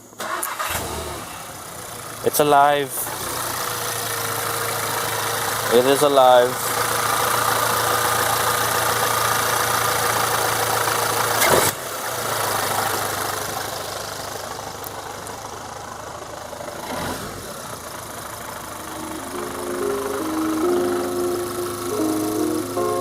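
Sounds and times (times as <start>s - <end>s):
car engine idling: 0.0s - 23.0s
background music: 18.8s - 23.0s.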